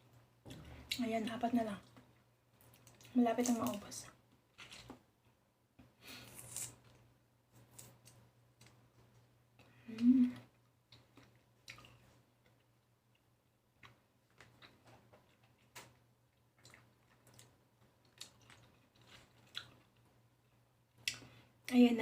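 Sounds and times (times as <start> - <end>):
wet chewing of fruit: 10.9 - 13.2, 13.8 - 20.1.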